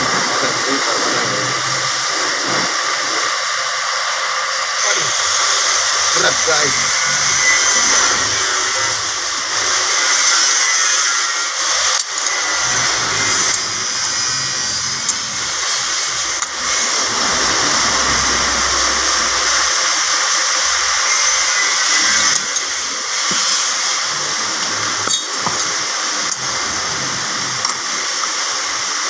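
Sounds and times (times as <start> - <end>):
rushing hiss of moving air: 15.8 - 21.9.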